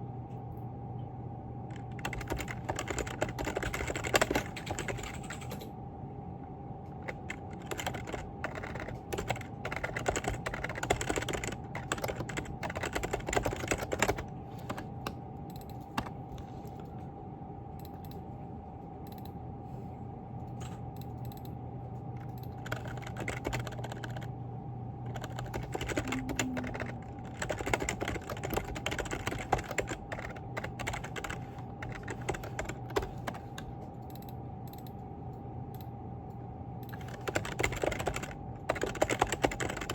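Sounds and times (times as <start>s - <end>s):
steady hum: 0.0s - 39.9s
keyboard typing clicks: 1.7s - 5.7s, 7.0s - 16.2s, 21.0s - 21.6s, 22.2s - 24.3s, 25.1s - 35.0s, 36.8s - 39.9s.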